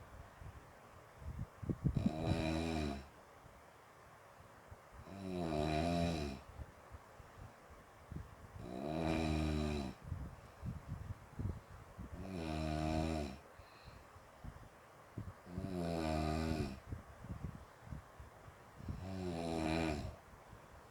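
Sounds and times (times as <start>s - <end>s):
person snoring: 2.0s - 3.1s, 5.1s - 6.4s, 8.6s - 10.0s, 12.2s - 13.4s, 15.5s - 16.8s, 18.9s - 20.2s.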